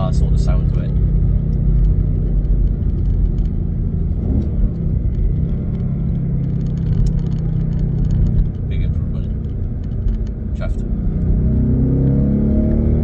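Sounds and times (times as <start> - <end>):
car engine rumble while driving: 0.0 - 13.0.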